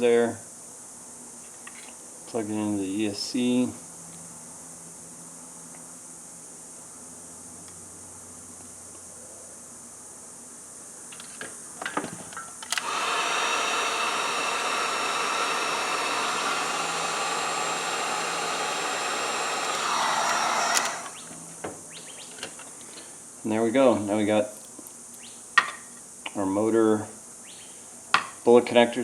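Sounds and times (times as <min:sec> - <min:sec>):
heat gun blowing hot air: 0:12.7 - 0:21.2.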